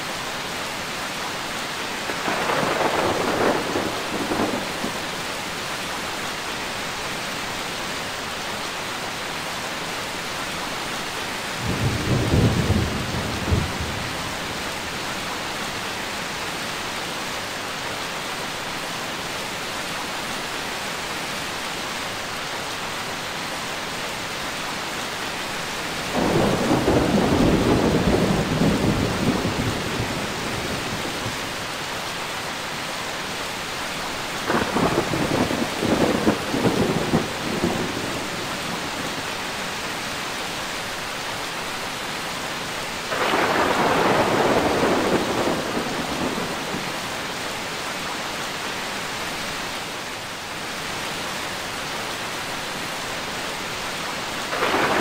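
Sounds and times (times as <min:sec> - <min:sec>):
heavy rain: 0:00.0 - 0:55.0
thunder rumbling: 0:02.1 - 0:05.2, 0:11.6 - 0:14.6, 0:26.1 - 0:31.5, 0:34.4 - 0:39.0, 0:43.1 - 0:47.2, 0:54.5 - 0:55.0.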